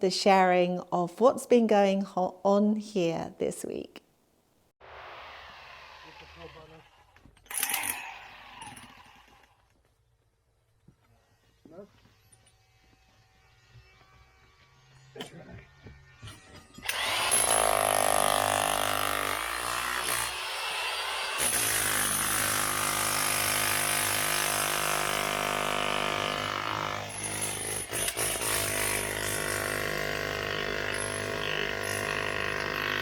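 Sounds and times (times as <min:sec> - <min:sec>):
power drill drilling into stone: 0:04.9 - 0:09.7, 0:16.2 - 0:33.0.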